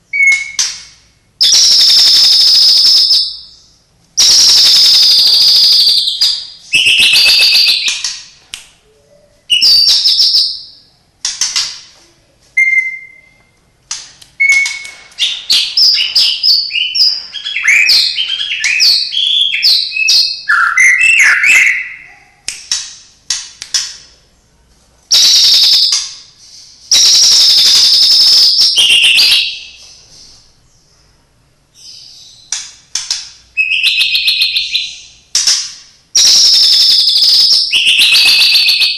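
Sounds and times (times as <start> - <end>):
bird singing whistled phrases: 0.1 - 0.7, 1.4 - 8.1, 8.8 - 10.8, 12.6 - 13.5, 14.4 - 22.2, 25.1 - 29.8, 33.6 - 35.2, 36.2 - 38.9.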